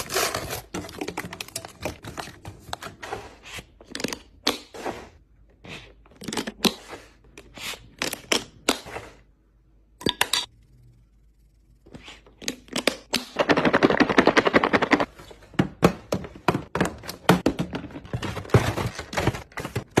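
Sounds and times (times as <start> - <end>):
objects clicking and clattering: 0.0 - 3.2, 12.4 - 20.0.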